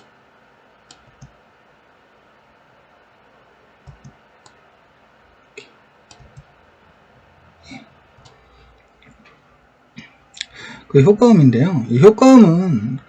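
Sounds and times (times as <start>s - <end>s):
room hiss: 0.0s - 13.0s
computer mouse clicking: 0.8s - 1.4s, 3.8s - 4.6s, 6.1s - 6.5s.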